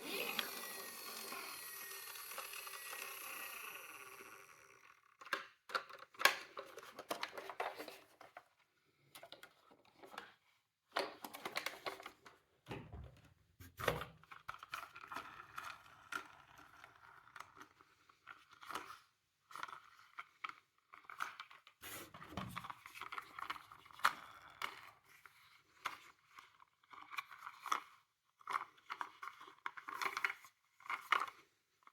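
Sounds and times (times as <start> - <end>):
toy wheels whirring: 0.0 - 5.3, 14.6 - 20.3
toy cars clicking and rattling: 0.0 - 7.9, 14.2 - 21.8, 22.6 - 31.9.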